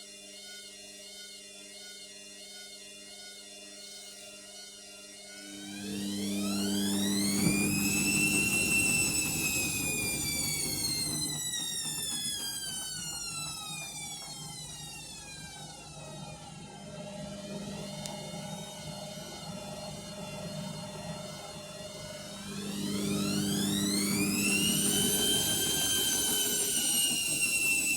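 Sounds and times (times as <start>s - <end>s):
steady hum: 5.4s - 11.3s, 16.8s - 27.1s
washing machine motor whine: 5.4s - 27.9s.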